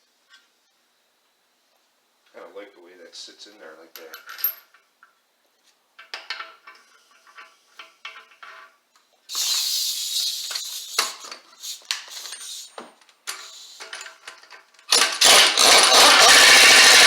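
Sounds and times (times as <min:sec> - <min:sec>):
metal tools clinking: 0:12.0 - 0:16.6
loud rough grinding: 0:14.9 - 0:17.0.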